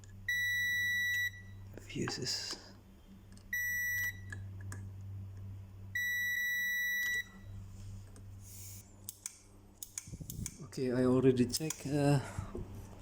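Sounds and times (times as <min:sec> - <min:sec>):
multimeter continuity beeps: 0:00.3 - 0:01.6, 0:03.5 - 0:04.4, 0:05.9 - 0:07.5.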